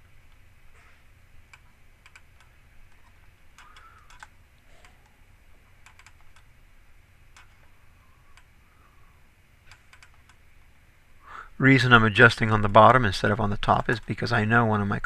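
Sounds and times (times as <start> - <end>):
low steady hum: 0.0 - 15.0
mouse and keyboard clicks: 1.5 - 5.2, 5.8 - 6.5, 7.3 - 7.7, 9.7 - 10.4.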